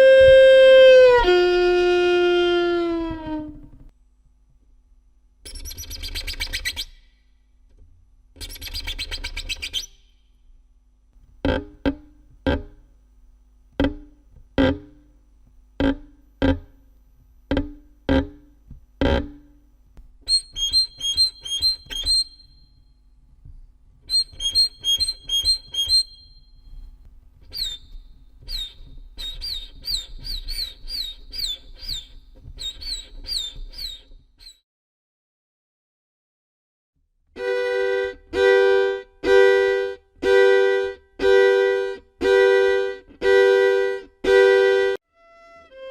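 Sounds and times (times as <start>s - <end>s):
sliding high violin chirps: 0.0s - 3.6s, 20.3s - 22.8s, 24.1s - 26.9s, 27.5s - 34.6s, 37.4s - 45.9s
high violin trills: 0.0s - 3.7s, 37.4s - 45.9s
plucked low violin notes: 0.0s - 3.8s, 37.4s - 45.9s
scratchy violin bowing: 0.0s - 3.9s, 37.4s - 45.9s.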